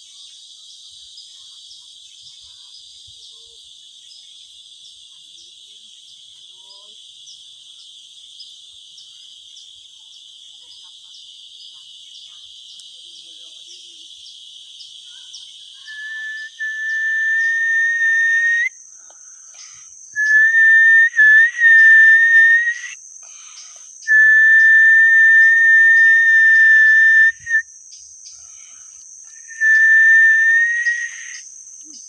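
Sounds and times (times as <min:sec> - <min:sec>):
person whistling long notes: 0:15.9 - 0:18.7, 0:20.2 - 0:23.0, 0:24.1 - 0:27.6, 0:29.3 - 0:31.4.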